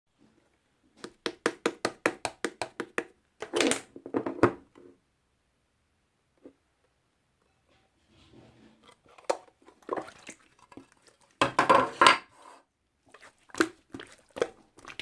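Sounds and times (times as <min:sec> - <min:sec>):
fingers tapping slime: 0:01.0 - 0:03.2.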